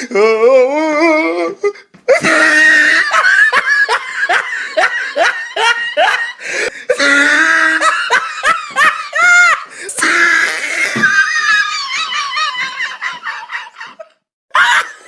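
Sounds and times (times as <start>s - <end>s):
person laughing hard: 2.1s - 15.0s.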